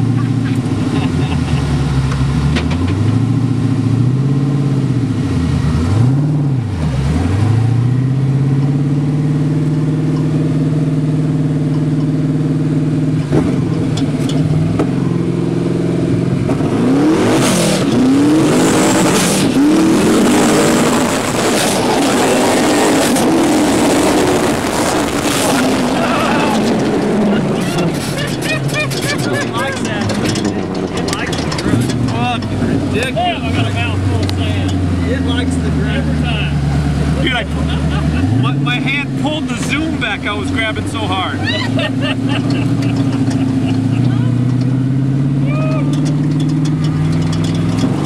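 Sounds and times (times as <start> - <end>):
buggy engine revving: 0.0 - 48.0
loud rushing noise: 16.5 - 34.6.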